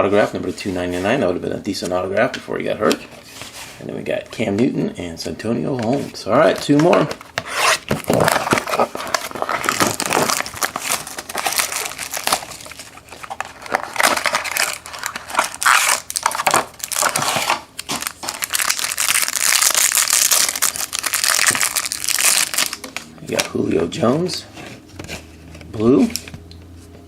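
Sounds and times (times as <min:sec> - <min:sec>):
wrappers crinkling and tearing: 0:07.5 - 0:23.1.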